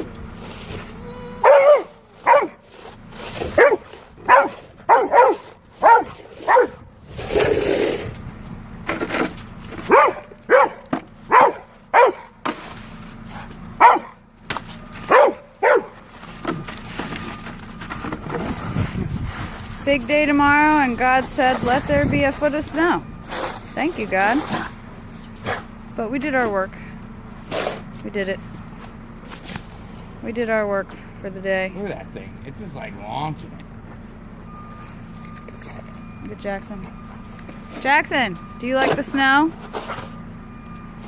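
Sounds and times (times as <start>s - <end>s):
dog barking: 1.4s - 2.6s, 3.5s - 6.8s, 9.9s - 12.4s, 13.8s - 14.2s, 15.1s - 16.0s.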